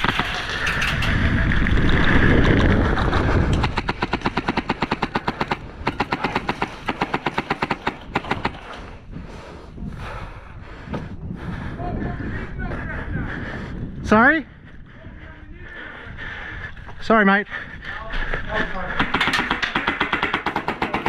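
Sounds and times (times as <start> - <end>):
airsoft gun firing rapidly: 3.6 - 8.7, 19.0 - 21.0.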